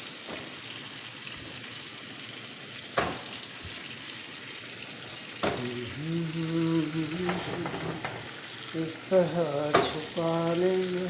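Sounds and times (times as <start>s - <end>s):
food sizzling in oil: 0.0s - 11.0s
utensil clanking on pan: 3.0s - 3.4s, 7.1s - 8.5s, 9.6s - 10.2s.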